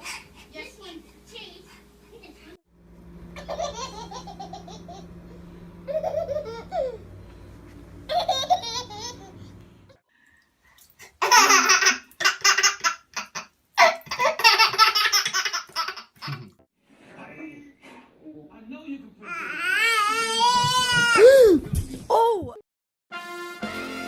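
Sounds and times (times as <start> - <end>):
low steady hum: 0.0 - 10.0
baby laughing: 3.4 - 5.1, 5.9 - 7.0, 8.1 - 9.5, 11.2 - 16.6.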